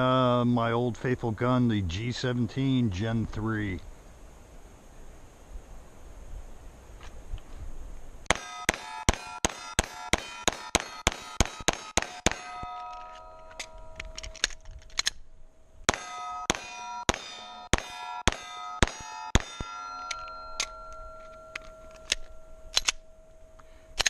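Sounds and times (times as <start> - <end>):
pistol shots: 8.3 - 12.8, 15.9 - 20.8
metallic dings of steel targets: 8.3 - 14.5, 15.9 - 23.8.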